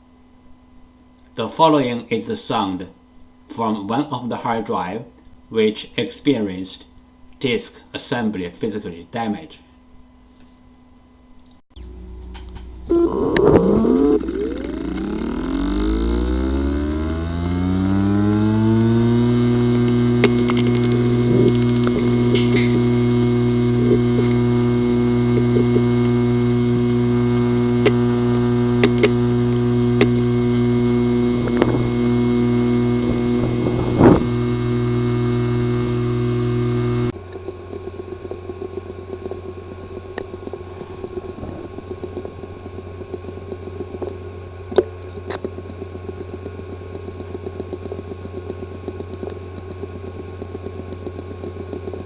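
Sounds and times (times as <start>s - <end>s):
hard disk drive buzzing hum: 0.0s - 52.0s
hard drive sharp clicks: 11.8s - 52.0s
thin high tone: 12.8s - 19.2s
rapid irregular ticking: 12.8s - 52.0s.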